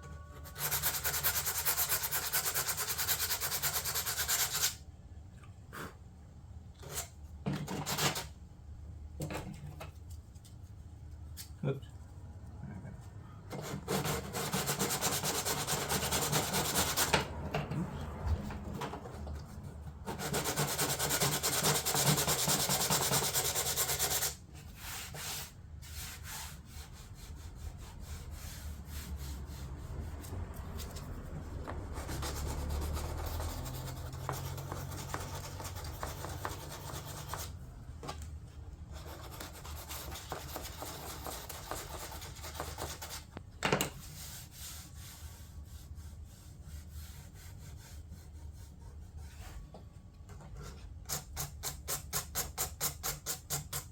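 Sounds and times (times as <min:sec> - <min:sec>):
sanding filler and fiberglass: 0:00.4 - 0:04.8, 0:13.6 - 0:17.2, 0:20.0 - 0:37.5, 0:38.9 - 0:43.2, 0:44.0 - 0:49.6.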